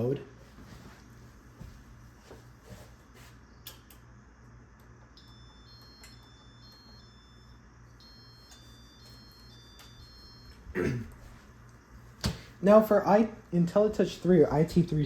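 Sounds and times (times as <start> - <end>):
ceiling fan pulsing hum: 0.0 - 15.0
high electronic tones: 5.2 - 10.7.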